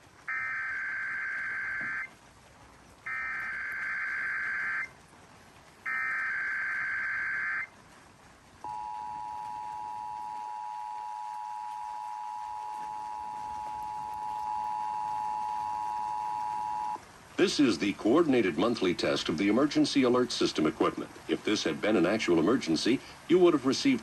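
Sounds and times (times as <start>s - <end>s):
two-tone attention signal: 0.3s - 2.1s, 8.7s - 17.0s
data tone bursts: 8.7s - 17.0s.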